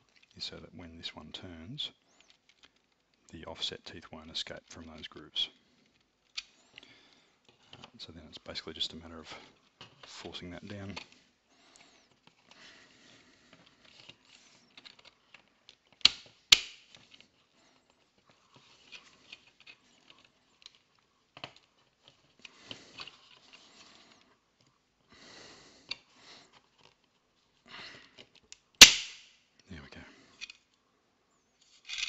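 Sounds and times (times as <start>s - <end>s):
sharp plastic snaps: 14.8s - 17.2s, 28.4s - 29.3s.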